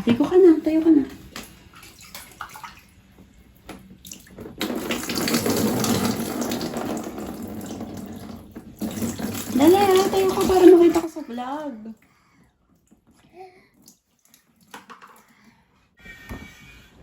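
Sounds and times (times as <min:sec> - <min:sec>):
bath water running: 0:00.0 - 0:12.0
small knocks and splashes: 0:01.1 - 0:11.4, 0:12.7 - 0:15.4.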